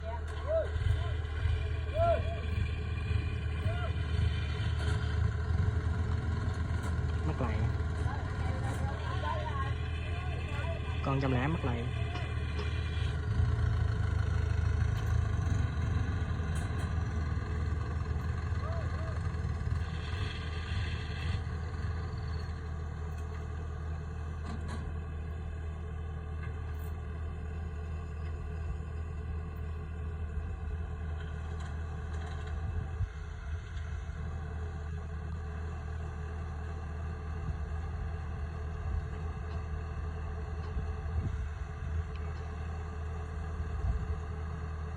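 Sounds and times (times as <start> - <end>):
diesel engine droning: 0.0 - 44.9.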